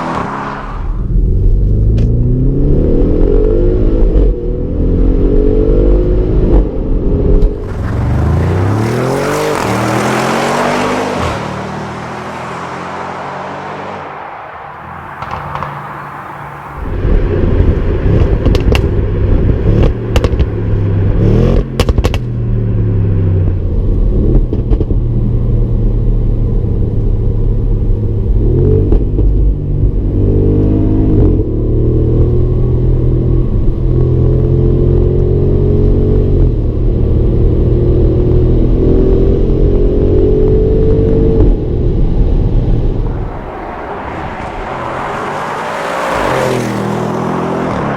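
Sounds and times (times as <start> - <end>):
car engine under load: 7.2 - 20.9, 39.8 - 47.9
sharp exhaust cracks: 14.0 - 17.0.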